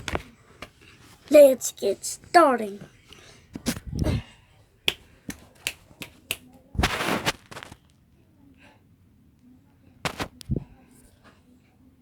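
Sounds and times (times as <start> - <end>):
rustling scrape: 6.8 - 7.8.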